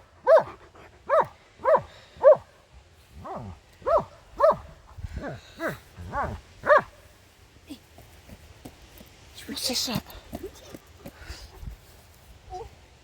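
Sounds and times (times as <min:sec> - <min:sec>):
dog barking: 0:00.2 - 0:02.5, 0:03.2 - 0:06.9.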